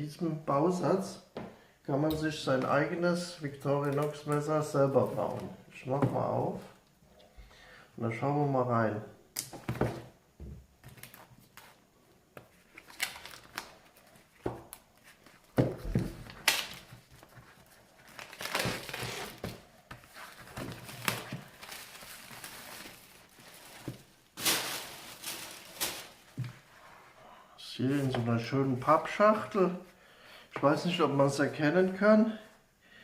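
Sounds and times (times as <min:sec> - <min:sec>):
packaging crinkling and rustling: 0:12.5 - 0:26.6.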